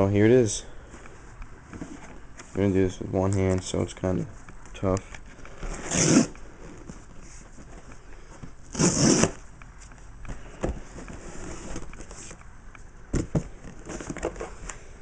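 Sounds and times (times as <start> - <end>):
cardboard rustling: 5.2 - 12.4, 13.1 - 14.7
packing tape tearing: 5.8 - 6.3, 8.7 - 9.4.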